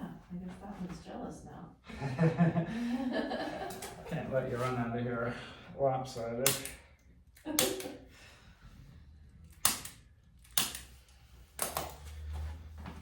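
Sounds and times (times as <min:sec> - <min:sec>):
chiropractic tool clicking: 0:06.4 - 0:06.8, 0:09.5 - 0:12.0.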